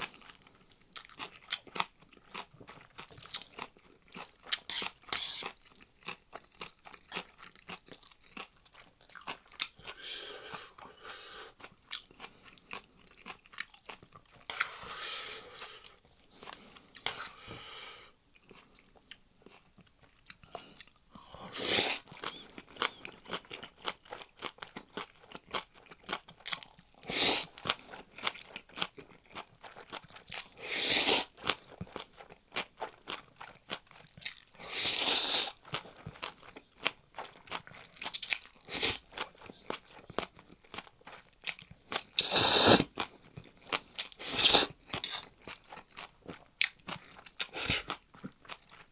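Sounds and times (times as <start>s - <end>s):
chewing with wet mouth clicks: 0.1s - 10.0s, 11.5s - 14.8s, 31.3s - 34.6s, 35.6s - 42.2s, 42.9s - 48.9s.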